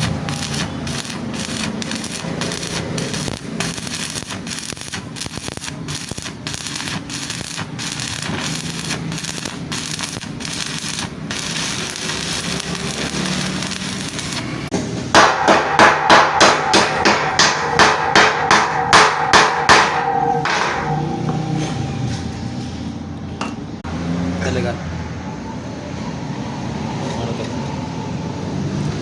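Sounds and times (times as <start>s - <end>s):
welding arc crackling: 0.0s - 16.0s
hammer striking metal: 15.1s - 23.7s.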